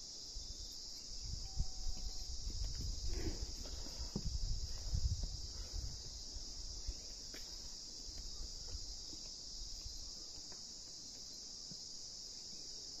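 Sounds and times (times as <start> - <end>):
insects chirring: 0.0 - 13.0.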